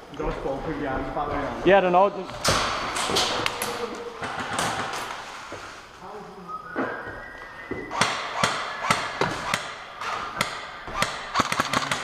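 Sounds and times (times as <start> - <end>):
airsoft guns firing: 7.9 - 12.0.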